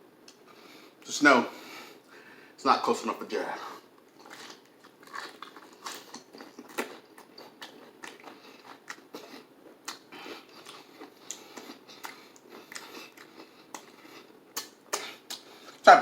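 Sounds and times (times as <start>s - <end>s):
person chewing crispy food: 4.1s - 15.8s.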